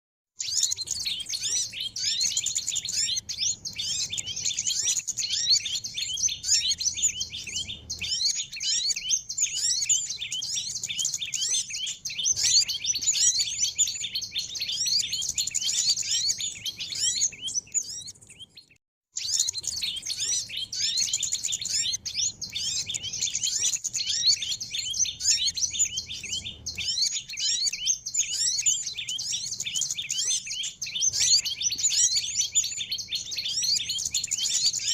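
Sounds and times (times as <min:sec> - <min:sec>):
small birds twittering and chirping: 0:00.4 - 0:34.9.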